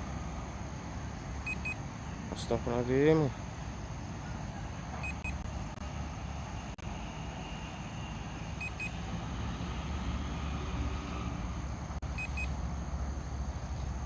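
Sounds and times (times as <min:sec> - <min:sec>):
short high electronic beeps: 0:01.5 - 0:01.8, 0:05.0 - 0:05.4, 0:08.6 - 0:09.0, 0:12.2 - 0:12.5.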